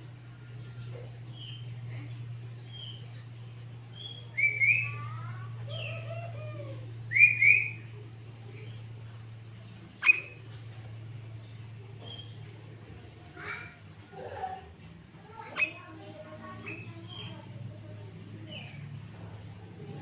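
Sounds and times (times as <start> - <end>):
steady low hum: 0.0 - 20.0
faint bird chirps: 0.2 - 10.7
bird whistled notes: 4.0 - 5.1, 7.1 - 7.8.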